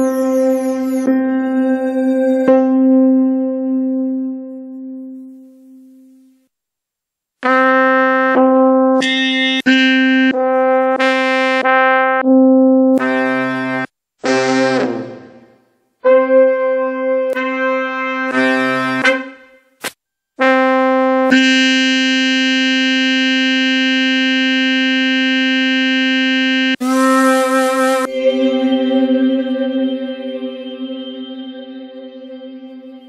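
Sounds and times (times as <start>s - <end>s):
synthesizer notes: 0.0s - 6.0s, 25.0s - 33.0s
brass-like synthesizer tones: 7.4s - 19.8s, 20.4s - 33.0s.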